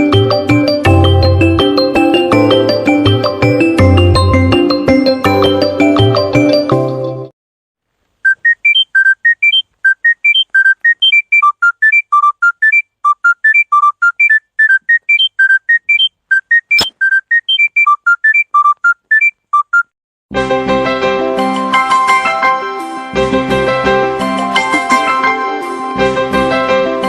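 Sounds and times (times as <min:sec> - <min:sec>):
phone ringtone beeping melody: 0:08.3 - 0:19.9
sharp click: 0:16.7 - 0:17.7.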